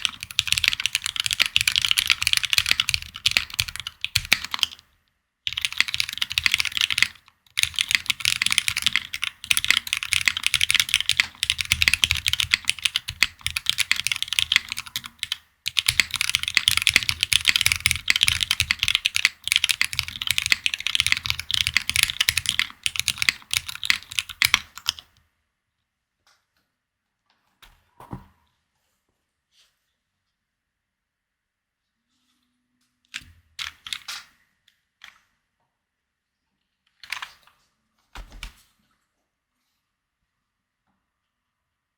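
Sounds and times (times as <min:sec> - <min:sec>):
fast typing on mechanical keyboard: 0:00.0 - 0:04.8, 0:05.5 - 0:25.1, 0:33.6 - 0:34.2.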